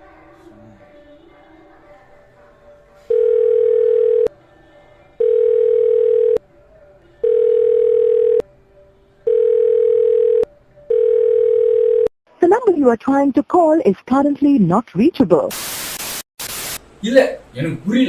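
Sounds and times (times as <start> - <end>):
telephone call beeps: 3.1 - 4.3, 9.3 - 12.1.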